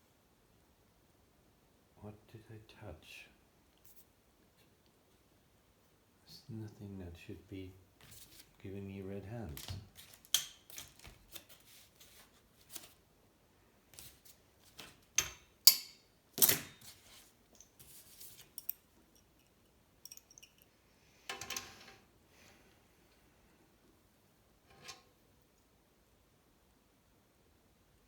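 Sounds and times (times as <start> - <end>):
rustling: 8.0 - 8.6, 16.8 - 18.8.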